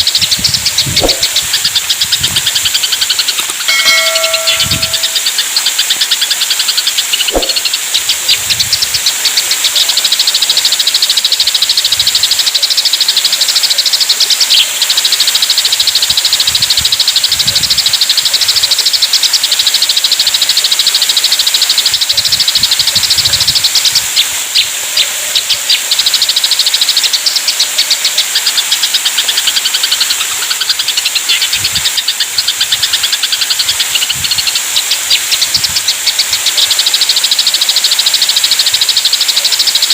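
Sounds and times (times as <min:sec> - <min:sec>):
sparrows chattering: 0:00.0 - 0:39.9
steady high hiss: 0:00.0 - 0:39.9.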